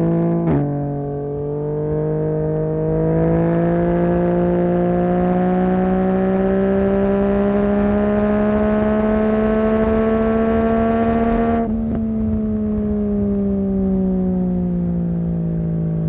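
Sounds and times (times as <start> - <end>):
motorcycle engine revving under load: 0.0 - 15.2.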